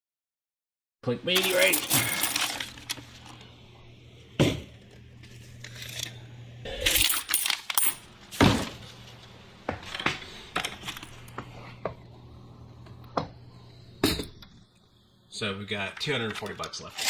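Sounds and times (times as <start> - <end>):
coins clinking into a bucket: 1.4 - 3.0, 6.8 - 8.0.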